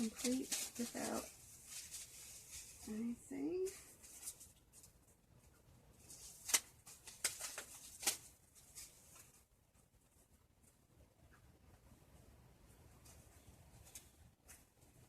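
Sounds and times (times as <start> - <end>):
packaging rustling: 0.0 - 2.8, 6.0 - 9.4.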